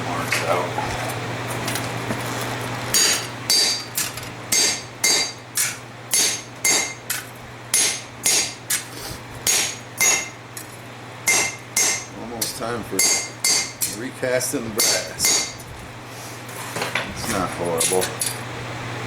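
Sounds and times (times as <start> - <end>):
hammer ringing on steel: 3.0 - 3.9, 4.5 - 5.4, 6.1 - 7.0, 11.3 - 12.1, 13.0 - 13.8, 14.8 - 15.6.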